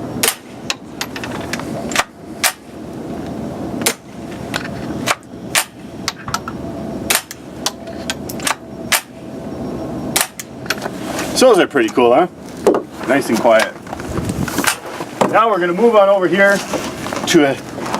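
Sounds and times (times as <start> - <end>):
muffled rifle shots: 0.2 - 0.6, 7.1 - 7.5, 8.4 - 9.3, 10.1 - 10.5.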